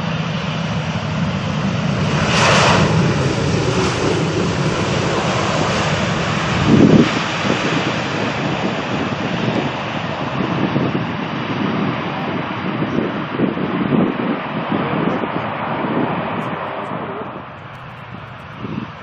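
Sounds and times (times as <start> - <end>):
jet engines rumbling: 0.0 - 19.0.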